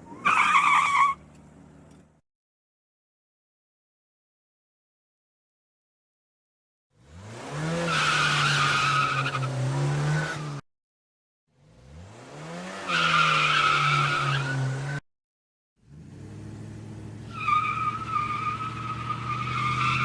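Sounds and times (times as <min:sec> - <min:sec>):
car engine revving: 0:07.0 - 0:10.6, 0:11.6 - 0:15.0.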